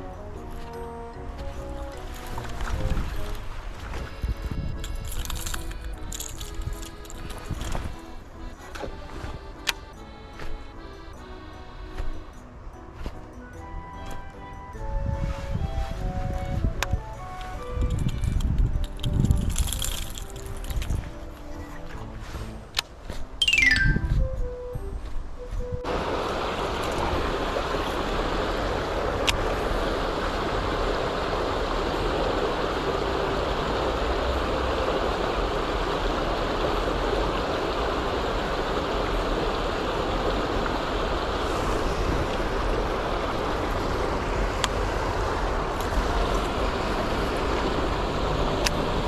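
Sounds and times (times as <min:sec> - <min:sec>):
strong wind buffeting microphone: 0:00.0 - 0:11.4, 0:13.9 - 0:49.0.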